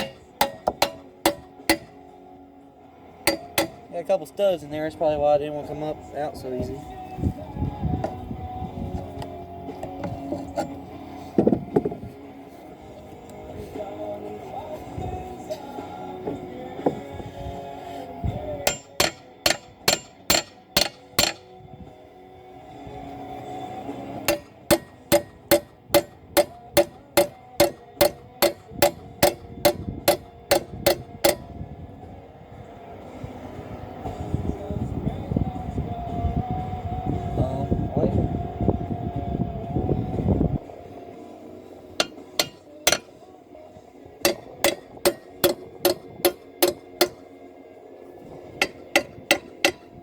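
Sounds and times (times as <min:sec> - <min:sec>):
hammer striking metal: 0:00.0 - 0:02.0, 0:03.3 - 0:03.9, 0:18.6 - 0:21.5, 0:24.2 - 0:31.5, 0:42.0 - 0:43.2, 0:44.2 - 0:47.3, 0:48.5 - 0:50.0.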